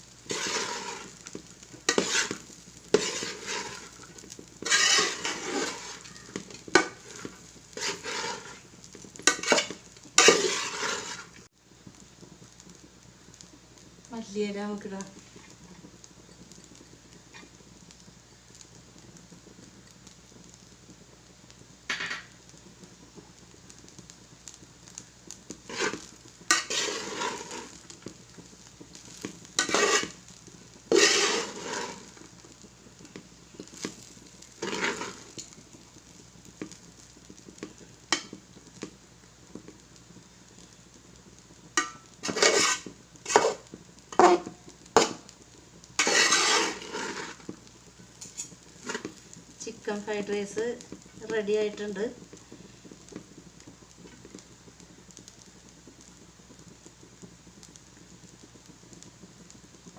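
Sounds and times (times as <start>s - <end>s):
faint sizzle: 0.0s - 59.9s
utensil scraping a pan: 0.3s - 11.5s, 25.6s - 27.9s, 29.0s - 30.2s, 30.9s - 32.2s, 33.6s - 35.6s, 41.8s - 45.2s, 46.0s - 47.5s, 48.2s - 49.2s.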